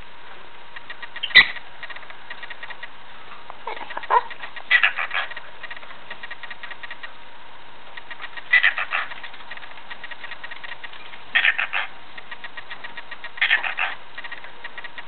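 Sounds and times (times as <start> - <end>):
soft bird twittering: 0.7 - 7.2, 7.9 - 15.0
cockatiels chirping: 0.8 - 2.9, 3.6 - 7.1, 8.0 - 15.0
cockatiel low warble: 0.8 - 7.2.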